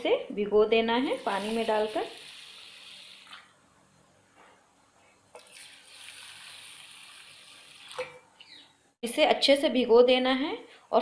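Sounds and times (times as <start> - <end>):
water pouring into a bowl: 5.4 - 8.2.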